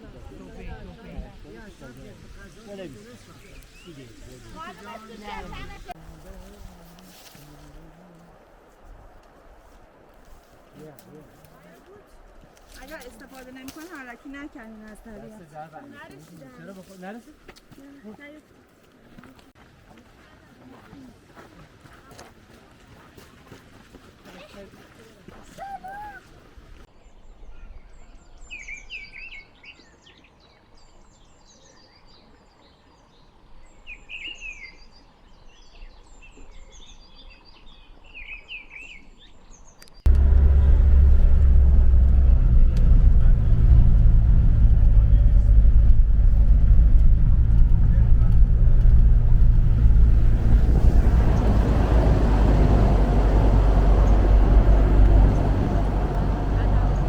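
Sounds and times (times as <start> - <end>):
small birds chirping: 1.6 - 6.0
faint low background rumble: 40.1 - 57.0
road noise rushing: 40.1 - 57.0
vehicle engine droning: 40.1 - 57.0.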